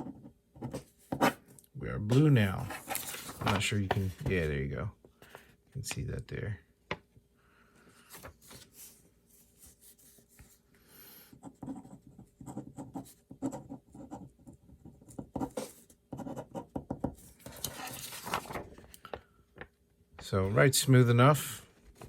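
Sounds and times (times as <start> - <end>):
pen scratching on paper: 0.0 - 1.4, 11.3 - 18.0.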